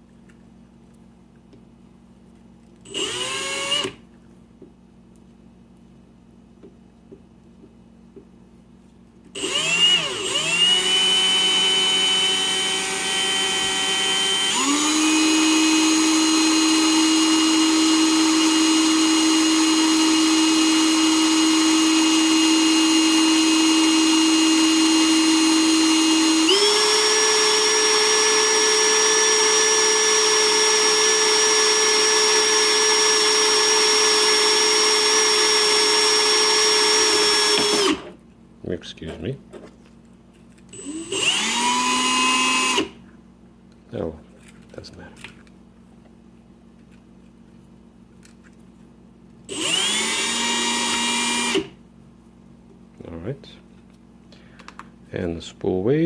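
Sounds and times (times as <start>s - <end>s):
electric motor whining: 2.9s - 4.0s, 9.4s - 38.1s, 40.8s - 42.9s, 49.5s - 51.7s.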